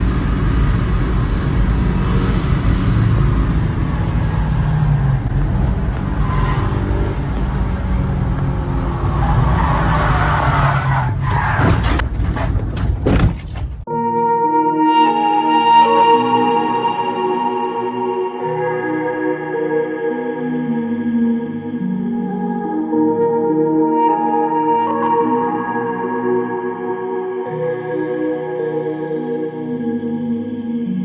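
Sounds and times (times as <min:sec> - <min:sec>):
car engine and road noise: 0:00.0 - 0:13.9
sharp thuds and scrapes: 0:09.3 - 0:13.9
music: 0:13.9 - 0:31.0.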